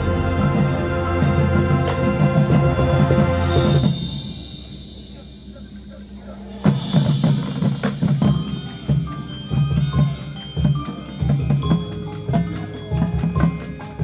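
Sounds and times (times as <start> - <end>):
marching band chord: 0.0 - 5.1
drums in busy rhythm: 0.0 - 14.0
ringing mallet percussion notes: 6.6 - 14.0.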